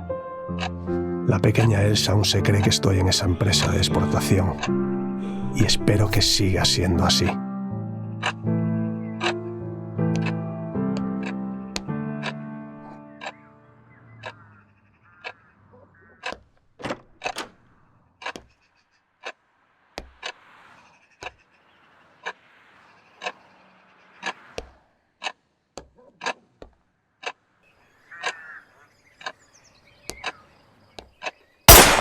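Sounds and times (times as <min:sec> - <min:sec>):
sharp clicks and knocks: 0:16.2 - 0:18.5.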